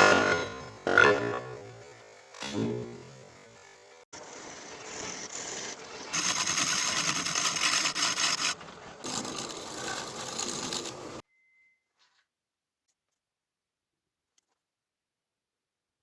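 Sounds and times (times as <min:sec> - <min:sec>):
tool scraping wood: 0:04.2 - 0:11.2.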